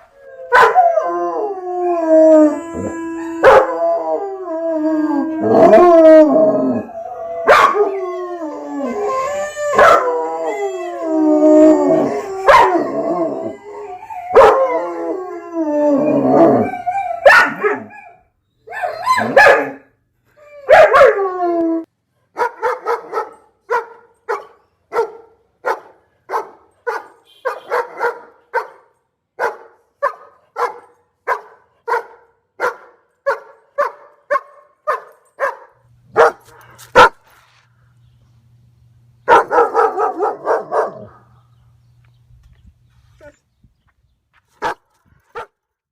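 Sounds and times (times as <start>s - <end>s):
dog howling: 0.2s - 18.0s
dog barking: 0.6s - 0.8s, 3.4s - 3.7s, 7.5s - 7.8s, 9.8s - 10.0s, 17.3s - 17.9s, 19.2s - 19.8s, 22.4s - 37.2s, 39.3s - 41.2s.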